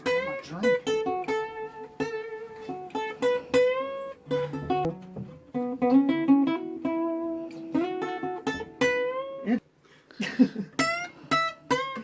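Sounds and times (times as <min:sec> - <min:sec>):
acoustic guitar picking: 0:00.0 - 0:09.6, 0:10.6 - 0:12.0.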